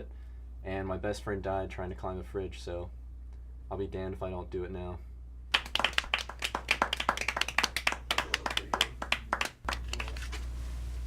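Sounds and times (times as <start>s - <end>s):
group of people clapping: 5.5s - 10.3s.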